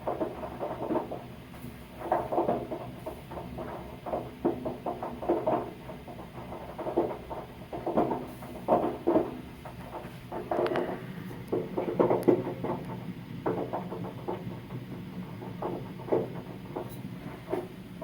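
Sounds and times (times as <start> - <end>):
water heater tank popping: 10.4 - 14.8.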